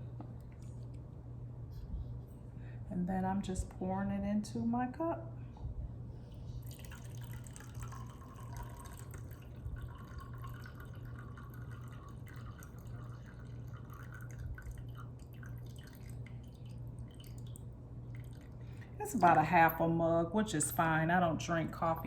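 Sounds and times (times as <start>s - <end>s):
coffee pouring into a mug: 6.4s - 19.8s.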